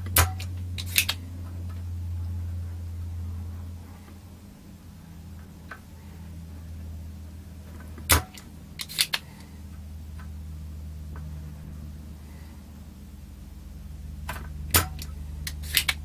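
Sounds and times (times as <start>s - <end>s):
steady low hum: 0.0s - 16.0s
desoldering pump snap: 0.1s - 1.2s, 8.1s - 9.2s, 14.3s - 16.0s
quick clicks: 8.3s - 9.3s.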